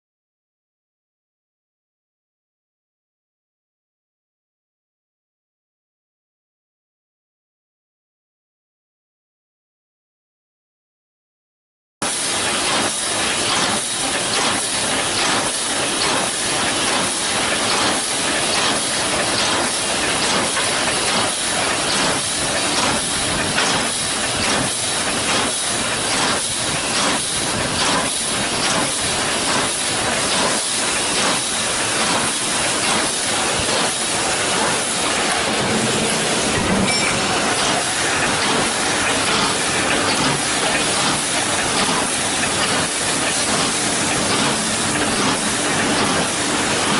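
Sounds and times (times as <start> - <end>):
welding machine hissing and clattering: 12.0 - 46.9.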